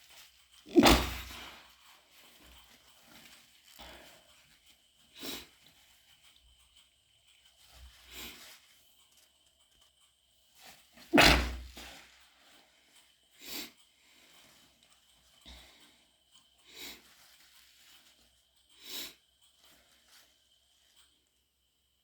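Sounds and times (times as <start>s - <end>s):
wet stifled sneeze: 0.7s - 1.6s, 11.0s - 12.1s
wet sniffles: 0.7s - 2.4s, 11.0s - 12.2s.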